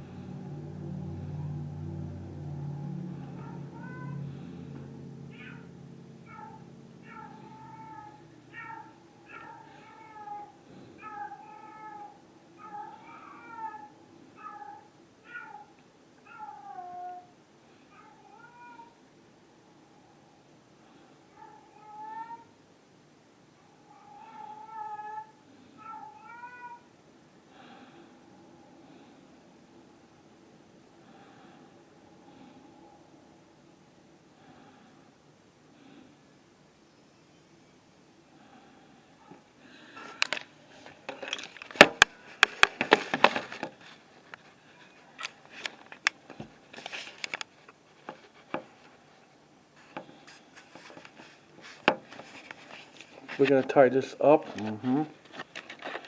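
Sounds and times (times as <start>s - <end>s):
cat meowing: 3.2s - 4.4s, 5.2s - 17.3s, 17.9s - 19.0s, 21.3s - 22.6s, 23.9s - 26.9s
rustling and scraping: 39.2s - 56.0s
sharp clicks and knocks: 41.1s - 43.8s.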